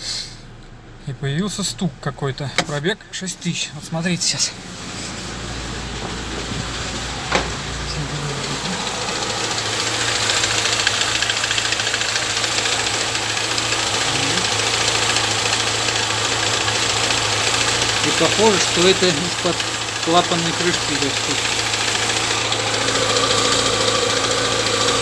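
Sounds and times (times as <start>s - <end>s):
car engine idling: 0.0s - 25.0s
fast ticking engine knock: 3.6s - 25.0s.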